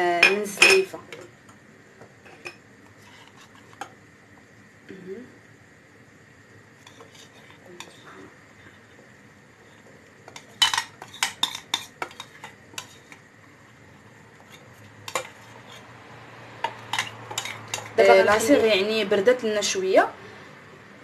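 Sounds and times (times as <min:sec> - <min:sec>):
metal spoon scraping a pot: 0:06.8 - 0:08.1, 0:10.4 - 0:13.2, 0:14.4 - 0:15.9, 0:16.6 - 0:18.4.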